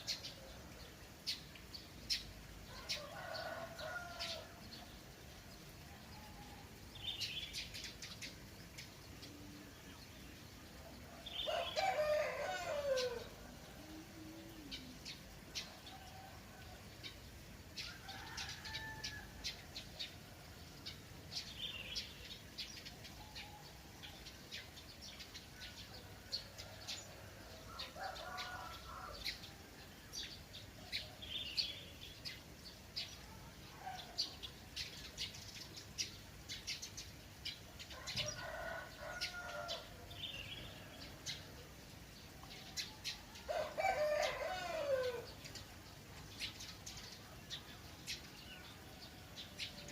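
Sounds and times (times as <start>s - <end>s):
small birds chirping: 0.0s - 16.1s, 17.0s - 49.9s
water trickling: 0.0s - 23.2s
roosters crowing: 2.8s - 4.7s, 11.2s - 14.8s, 17.8s - 19.6s, 26.6s - 29.6s, 37.9s - 41.2s, 43.4s - 45.4s.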